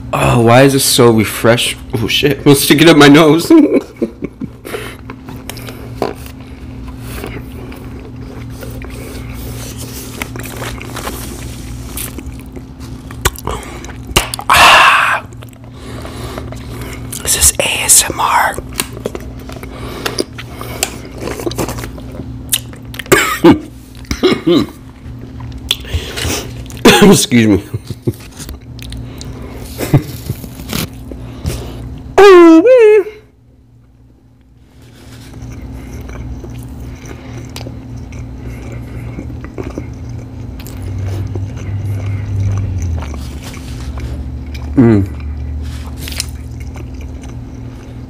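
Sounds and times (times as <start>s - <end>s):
steady low hum: 0.0s - 48.0s
person chewing food: 3.9s - 27.0s, 27.7s - 32.2s, 34.3s - 48.0s
man burping: 23.1s - 24.8s.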